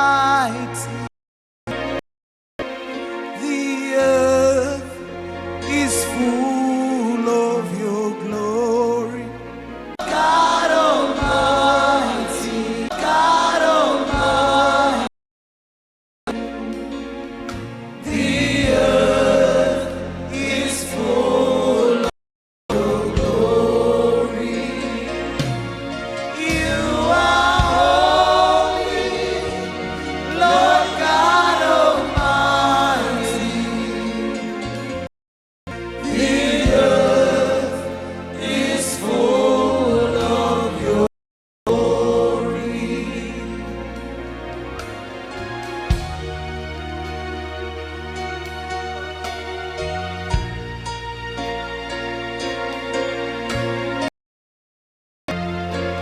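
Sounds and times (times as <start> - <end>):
gospel voices singing: 0.0 - 1.1, 3.3 - 15.1, 18.0 - 22.1, 22.7 - 35.1, 35.8 - 41.1, 41.7 - 46.1.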